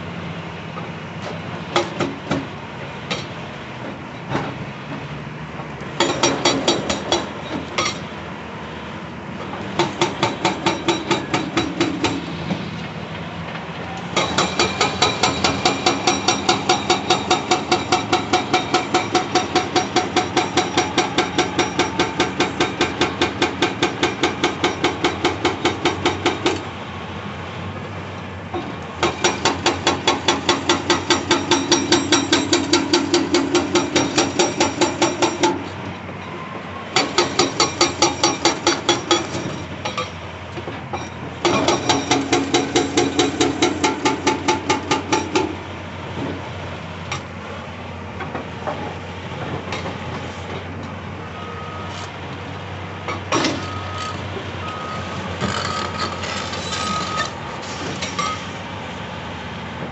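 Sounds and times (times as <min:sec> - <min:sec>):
diesel engine running: 0:00.0 - 0:59.9
hydraulic breaker hammering rock: 0:06.0 - 0:08.0, 0:09.8 - 0:12.3, 0:14.2 - 0:26.7, 0:29.0 - 0:35.8, 0:37.0 - 0:40.2, 0:40.9 - 0:45.6, 0:53.1 - 0:54.2.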